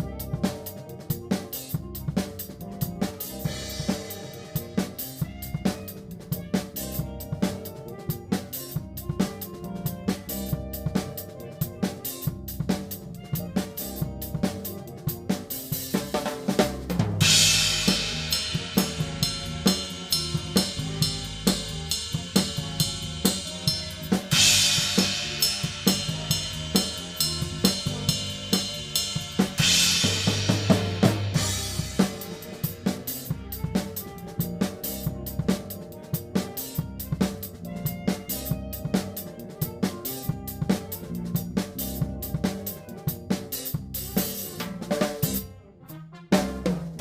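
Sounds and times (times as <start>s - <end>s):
drum kit playing big band music: 0.0s - 47.0s
cymbal crashes: 17.2s - 33.2s.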